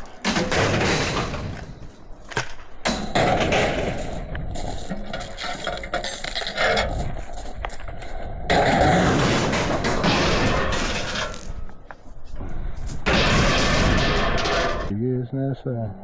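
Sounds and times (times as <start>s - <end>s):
rubbish clinking and knocking: 0.0s - 12.0s.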